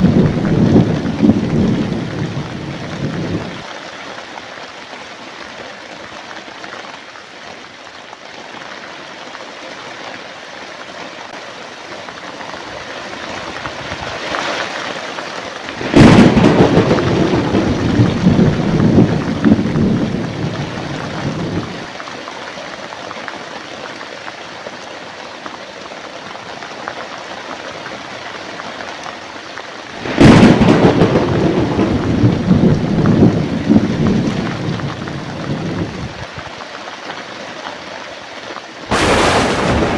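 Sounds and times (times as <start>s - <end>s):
thunderclaps rumbling: 0.0s - 3.6s, 15.7s - 21.9s, 30.0s - 36.3s, 38.9s - 39.9s
heavy rain: 0.0s - 5.4s, 11.0s - 23.0s, 26.5s - 39.9s.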